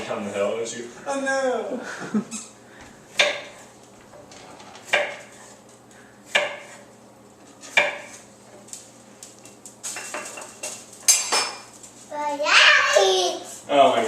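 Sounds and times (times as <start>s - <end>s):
dishes and cutlery clanking: 9.8s - 11.7s.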